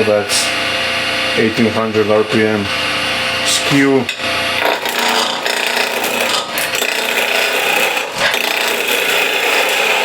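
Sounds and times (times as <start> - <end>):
chisel shaving wood on lathe: 4.6 - 10.0.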